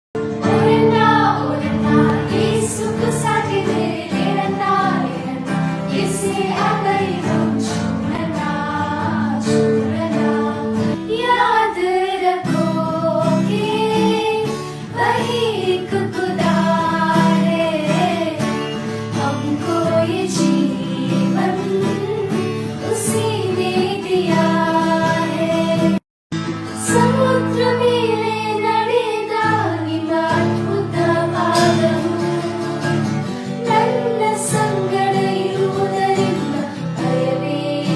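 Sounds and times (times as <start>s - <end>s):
plucked strings accompaniment: 0.2s - 11.1s.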